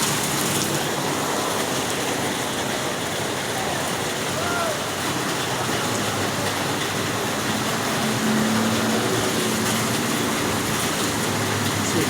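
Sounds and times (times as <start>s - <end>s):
heavy rain hissing: 0.0s - 12.0s
vehicle engine humming: 6.1s - 12.0s.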